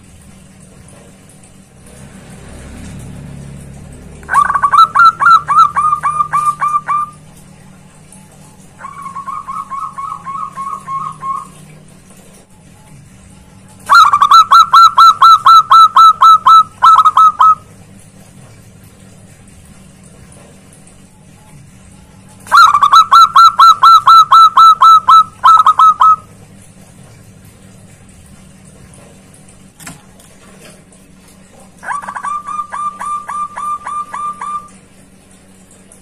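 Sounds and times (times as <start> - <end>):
dove cooing: 4.2 - 7.7, 8.8 - 11.8, 13.9 - 17.6, 22.5 - 26.3, 31.8 - 34.8.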